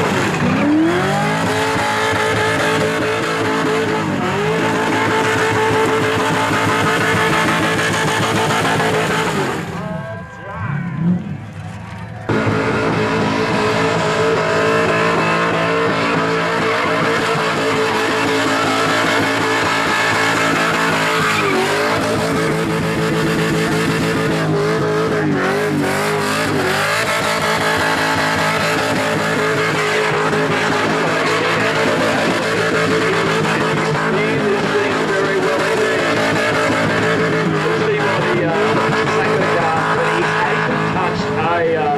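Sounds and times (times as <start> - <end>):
car engine at high revs: 0.0 - 41.9
tyres squealing: 12.3 - 40.4.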